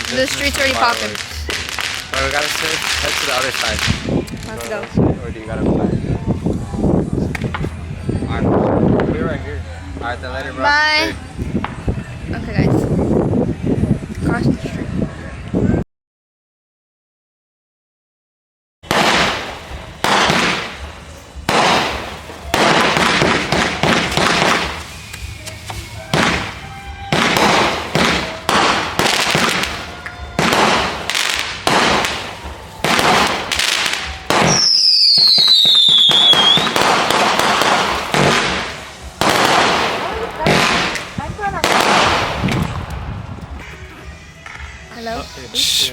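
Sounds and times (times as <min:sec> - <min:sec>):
fireworks bangs: 0:00.0 - 0:05.0, 0:18.8 - 0:43.8
falling firework whistle: 0:22.4 - 0:38.0, 0:45.5 - 0:45.9.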